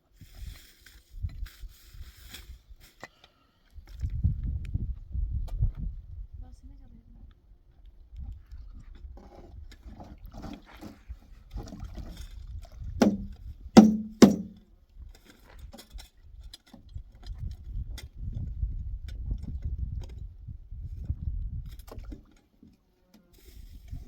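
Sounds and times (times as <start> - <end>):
loud ringing knocks: 13.0 - 14.5.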